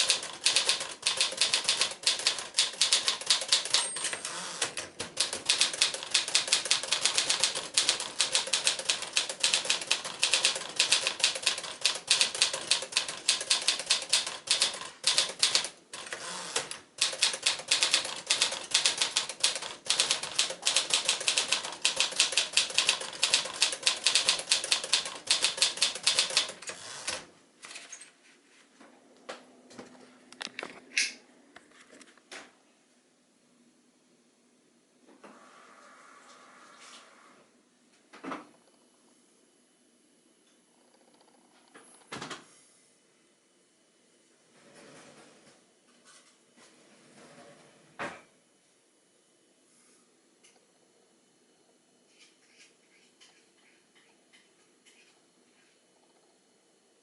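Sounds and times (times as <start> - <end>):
manual typewriter typing: 0.0 - 27.3.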